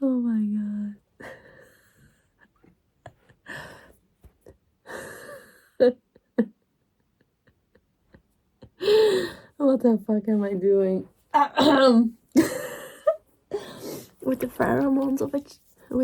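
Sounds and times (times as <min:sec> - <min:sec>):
woman's stifled laughter: 0:12.4 - 0:13.2.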